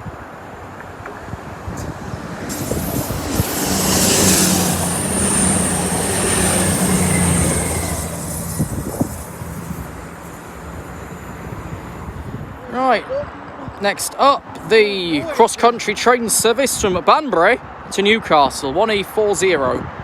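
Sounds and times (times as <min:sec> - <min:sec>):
diesel train engines humming: 0:00.0 - 0:16.6
high thin wheel squeal: 0:02.5 - 0:12.4.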